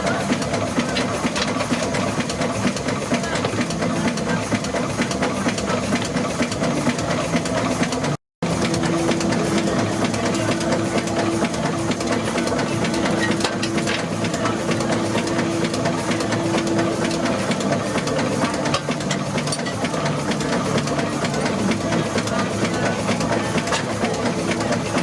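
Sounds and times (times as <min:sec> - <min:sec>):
steady mechanical hum: 0:00.0 - 0:25.0
steam engine clattering: 0:00.0 - 0:25.0.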